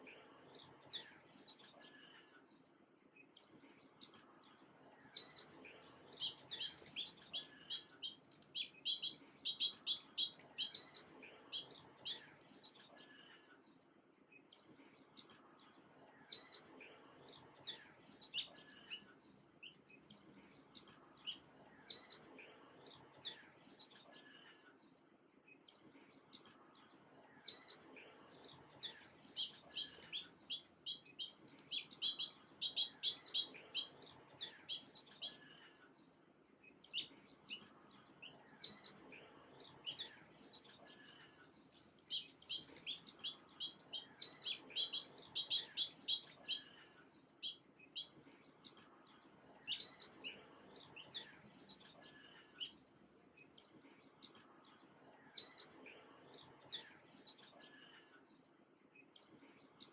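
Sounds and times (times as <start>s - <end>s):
small birds chirping: 0.0s - 59.9s.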